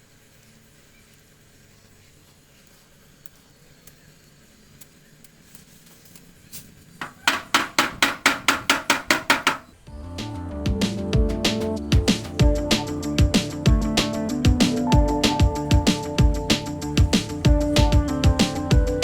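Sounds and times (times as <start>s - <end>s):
hammer tapping sheet metal: 7.0s - 9.7s
music: 9.8s - 19.0s.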